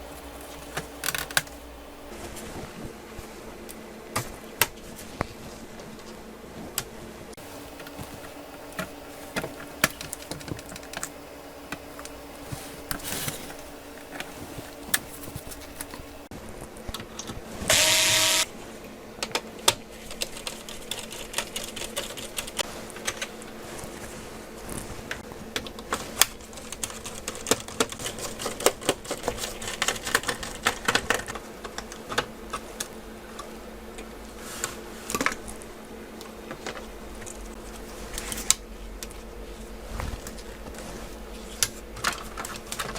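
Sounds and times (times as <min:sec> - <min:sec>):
faint steady hum: 0:00.0 - 0:42.9
tools clicking on laptop parts: 0:07.7 - 0:12.2.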